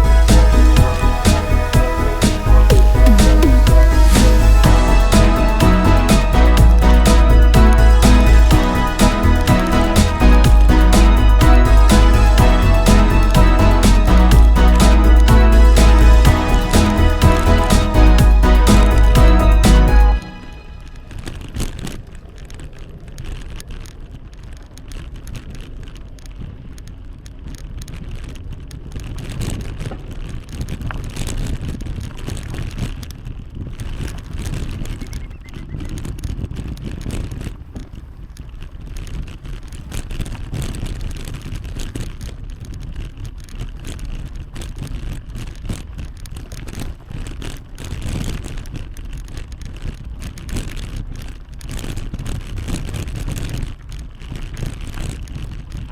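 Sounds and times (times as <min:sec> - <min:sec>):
rush of riding on road: 0:20.8 - 0:55.9.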